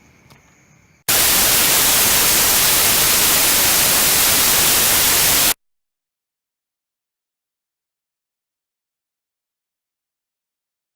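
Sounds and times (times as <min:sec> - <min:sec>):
white-noise static hiss: 0:01.1 - 0:05.6.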